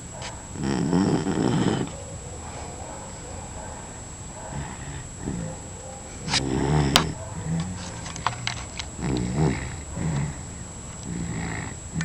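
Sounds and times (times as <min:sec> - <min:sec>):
dog snoring: 0:00.6 - 0:02.0, 0:04.5 - 0:05.6, 0:06.2 - 0:08.1, 0:09.0 - 0:12.0.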